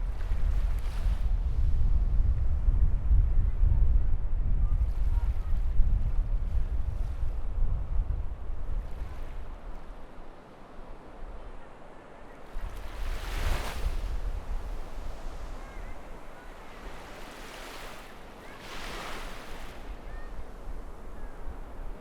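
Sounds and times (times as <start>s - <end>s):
wind buffeting microphone: 0.0s - 10.2s, 12.5s - 22.0s
waves breaking on beach: 9.0s - 22.0s.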